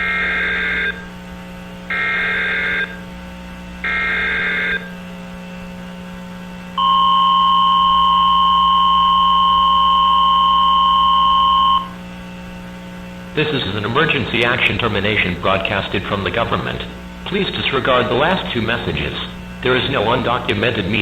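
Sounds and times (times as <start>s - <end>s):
low electrical hum: 0.0s - 21.0s
harsh digital data squawks: 6.8s - 12.0s.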